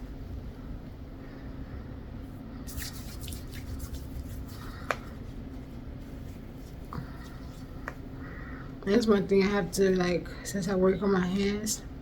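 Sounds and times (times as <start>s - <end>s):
low room hum: 0.0s - 12.0s
cream squishing and rustling: 2.6s - 8.2s.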